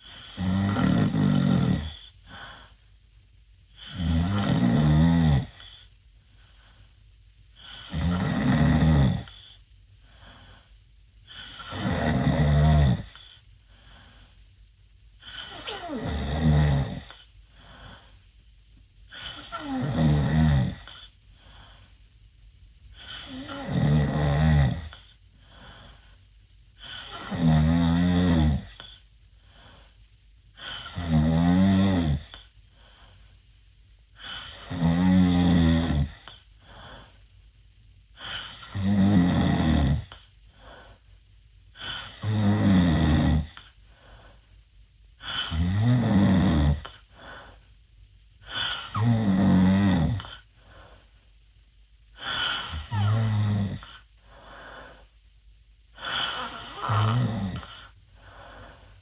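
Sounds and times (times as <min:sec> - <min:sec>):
boy snoring loudly: 0:00.0 - 0:02.1, 0:03.8 - 0:05.7, 0:07.6 - 0:09.5, 0:11.3 - 0:13.2, 0:15.2 - 0:17.2, 0:19.1 - 0:21.0, 0:23.0 - 0:25.1, 0:26.8 - 0:28.8, 0:30.6 - 0:32.4, 0:34.2 - 0:36.3, 0:38.2 - 0:40.2, 0:41.8 - 0:43.6, 0:45.2 - 0:47.0, 0:48.4 - 0:50.4, 0:52.2 - 0:54.0, 0:56.0 - 0:58.0
faint breathing: 0:01.8 - 0:03.0, 0:05.5 - 0:07.9, 0:09.2 - 0:11.8, 0:13.0 - 0:16.0, 0:17.0 - 0:18.4, 0:20.8 - 0:22.2, 0:24.8 - 0:27.3, 0:28.7 - 0:31.0, 0:32.3 - 0:34.7, 0:36.2 - 0:37.5, 0:40.0 - 0:42.3, 0:43.5 - 0:45.6, 0:46.8 - 0:49.1, 0:50.2 - 0:51.4, 0:52.0 - 0:59.0.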